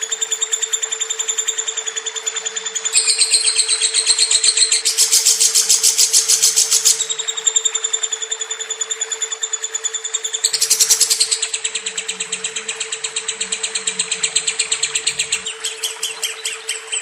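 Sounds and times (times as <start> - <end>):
lovebird chattering trill: 2.9 - 7.6, 9.0 - 17.0.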